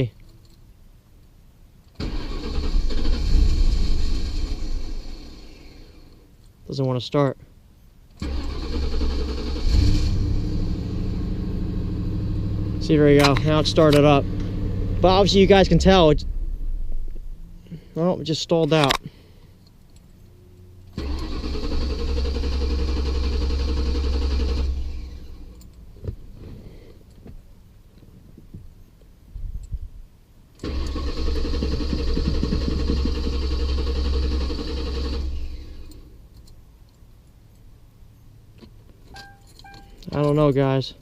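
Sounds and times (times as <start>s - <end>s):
car engine cranking by starter: 1.9s - 6.2s, 8.2s - 19.1s, 20.8s - 26.9s, 30.6s - 36.2s.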